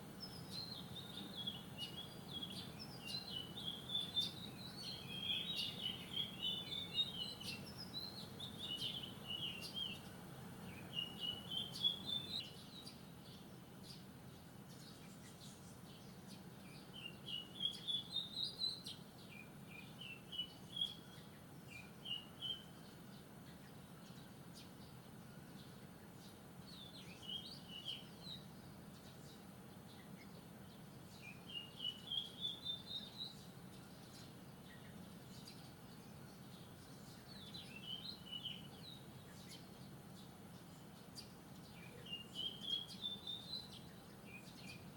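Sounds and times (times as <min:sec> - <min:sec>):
songbird singing: 0:00.0 - 0:44.9.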